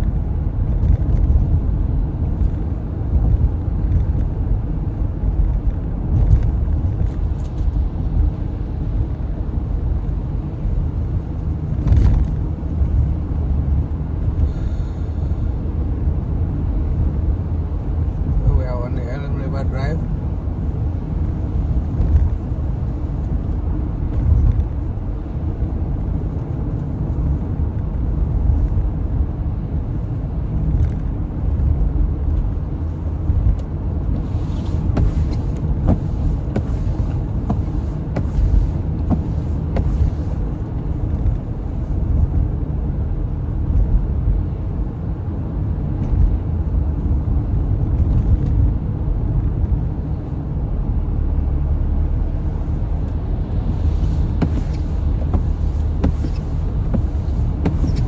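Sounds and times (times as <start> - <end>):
car road rumble: 0.0 - 58.0.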